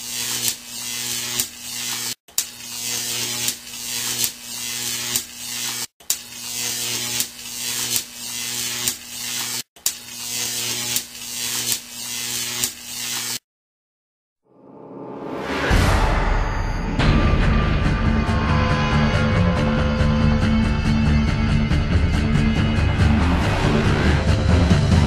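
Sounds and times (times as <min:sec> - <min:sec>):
mechanical buzz and hiss: 0:00.0 - 0:13.4
low hum: 0:14.5 - 0:25.0.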